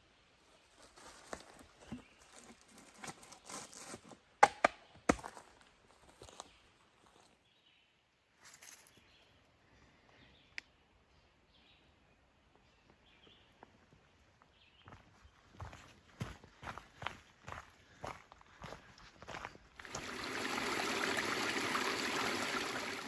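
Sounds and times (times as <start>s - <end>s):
rustling and crunching through brush: 0.4s - 4.2s.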